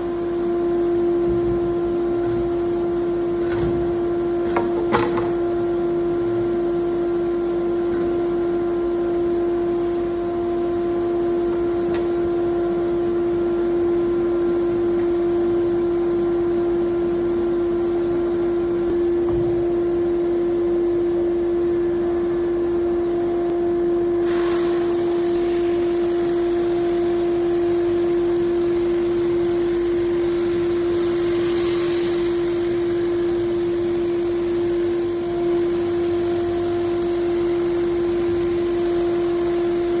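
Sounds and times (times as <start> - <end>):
broad hiss: 24.2 - 40.0.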